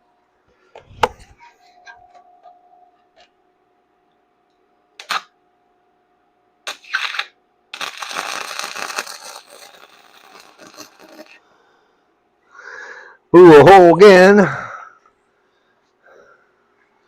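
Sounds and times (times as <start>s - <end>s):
crackling welding arc: 5.0s - 5.3s, 6.7s - 11.4s.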